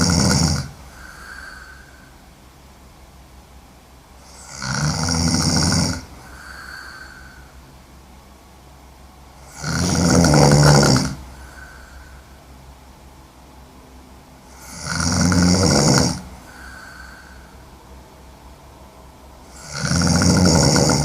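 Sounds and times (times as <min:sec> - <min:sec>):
woman snoring heavily: 0:00.0 - 0:02.2, 0:04.2 - 0:07.6, 0:09.4 - 0:12.4, 0:14.5 - 0:17.6, 0:19.4 - 0:21.0
faint breath out: 0:00.8 - 0:02.3, 0:06.1 - 0:07.7, 0:11.2 - 0:12.6, 0:16.2 - 0:17.8.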